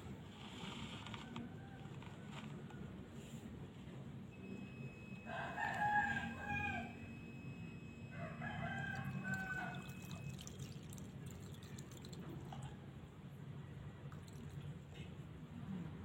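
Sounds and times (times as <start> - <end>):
rooster crowing: 5.2 - 7.4, 8.1 - 10.0.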